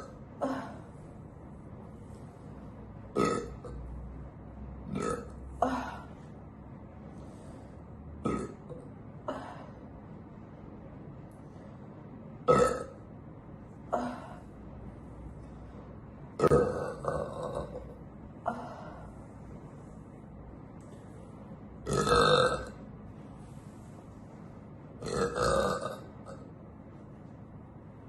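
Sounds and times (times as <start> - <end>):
woman belching: 3.1 - 3.8, 4.9 - 6.0, 8.2 - 8.8, 12.4 - 13.0, 16.4 - 18.0, 21.8 - 22.8, 25.0 - 26.4.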